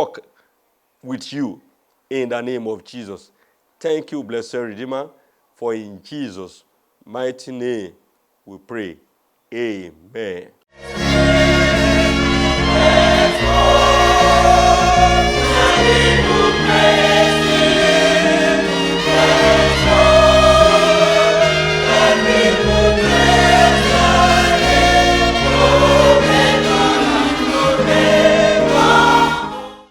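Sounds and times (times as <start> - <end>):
music with sustained bass line: 10.8 - 29.5
gospel choir singing: 10.8 - 29.9.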